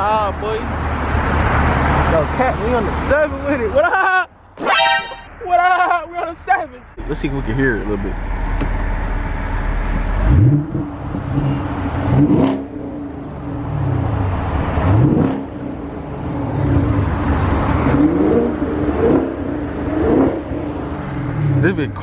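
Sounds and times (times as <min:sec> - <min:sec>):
car engine accelerating: 0:08.4 - 0:21.9.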